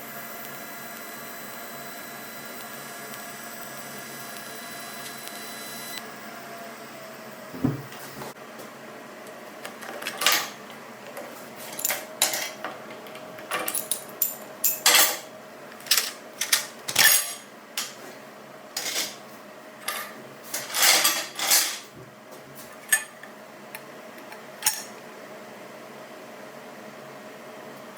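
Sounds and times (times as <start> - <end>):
metal clanks and clinks: 13.5 - 17.9, 19.8 - 21.8.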